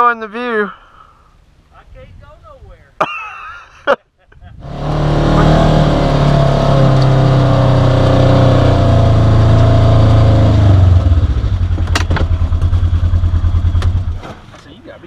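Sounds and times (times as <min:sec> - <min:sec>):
vehicle engine revving and idling: 0:04.6 - 0:14.3.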